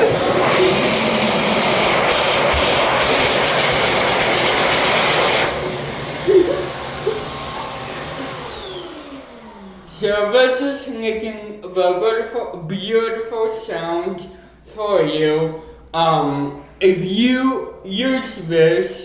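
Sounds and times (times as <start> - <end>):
electric hand dryer blowing: 0.0 - 9.9.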